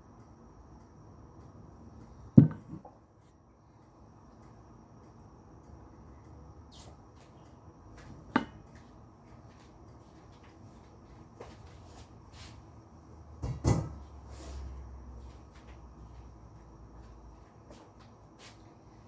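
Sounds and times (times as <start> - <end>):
heavy thumps: 2.4 - 2.9.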